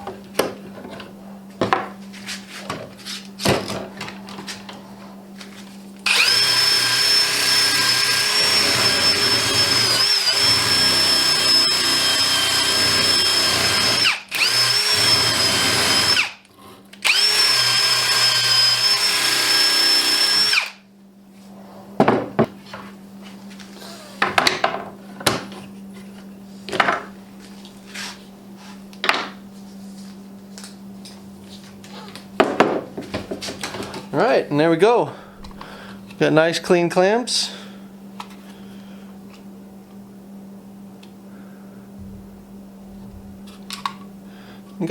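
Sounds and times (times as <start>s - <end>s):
drill with wire wheel whining: 6.0s - 16.4s, 17.0s - 20.8s, 23.8s - 24.2s.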